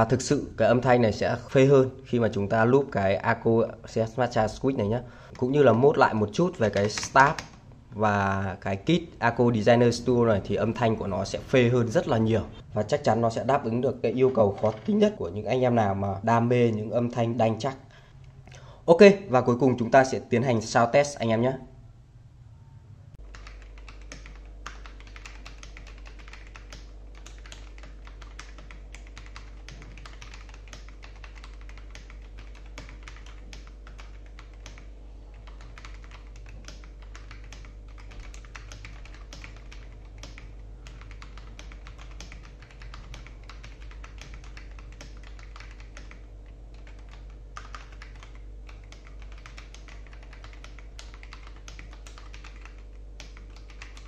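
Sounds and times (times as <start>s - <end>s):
steady low hum: 0.0s - 54.0s
fast mechanical keyboard typing: 5.4s - 7.6s, 23.2s - 54.0s.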